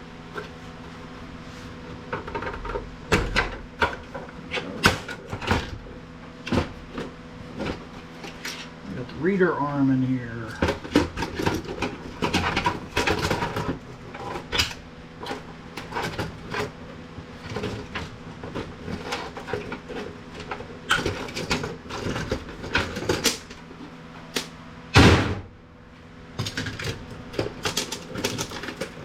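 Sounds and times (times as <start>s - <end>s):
loud thud: 25.0s - 25.5s
printer parts being pried apart: 26.4s - 29.0s.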